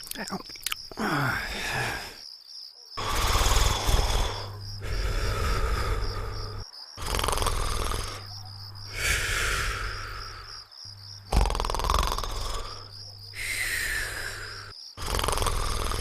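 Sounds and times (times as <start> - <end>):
cartoon character snoring: 3.0 - 10.6, 11.2 - 16.0
faint high chirping: 12.1 - 14.7.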